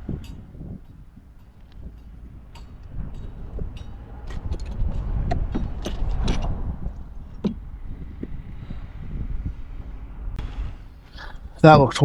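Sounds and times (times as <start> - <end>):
light metal clicks and knocks: 0.0 - 8.7
low rumble: 0.0 - 12.0.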